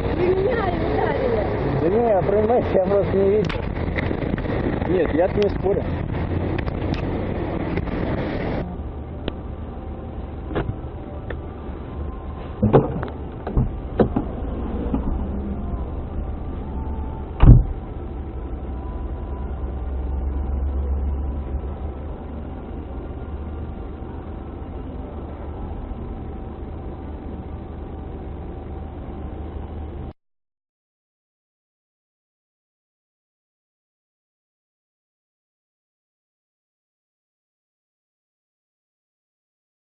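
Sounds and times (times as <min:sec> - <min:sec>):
car interior rumble: 0:00.0 - 0:30.1
loud thump: 0:12.6 - 0:14.3, 0:17.4 - 0:17.8.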